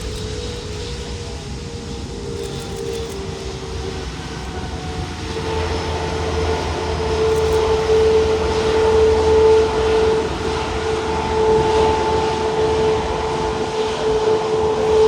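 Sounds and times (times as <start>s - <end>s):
jet engines whining and rumbling: 0.0s - 15.0s.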